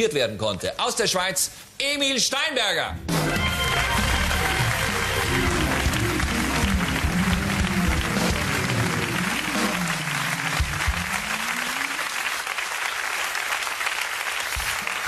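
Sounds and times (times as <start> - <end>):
music playing: 3.0 - 12.2
audience applauding: 3.3 - 15.0.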